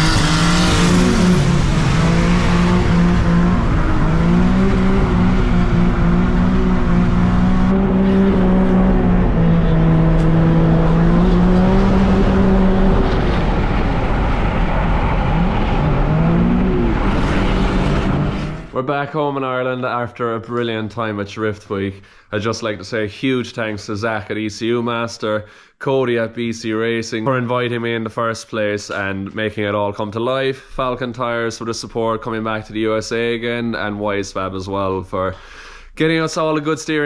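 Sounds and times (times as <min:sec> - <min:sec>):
car engine revving high: 0:00.0 - 0:18.7.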